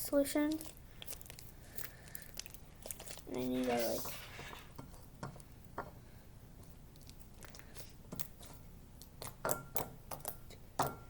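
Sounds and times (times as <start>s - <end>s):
slime clicking and squelching: 0.4s - 3.9s, 6.6s - 10.7s.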